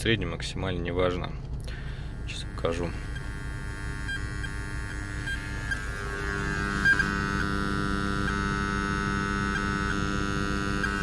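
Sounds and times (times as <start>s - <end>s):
faint regular ticks: 1.6s - 5.9s, 6.6s - 11.0s
speaker interference squeal and buzz: 1.8s - 11.0s.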